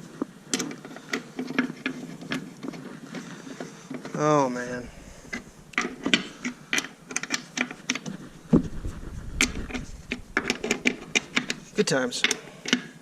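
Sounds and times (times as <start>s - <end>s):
heavy thump: 8.1s - 11.8s.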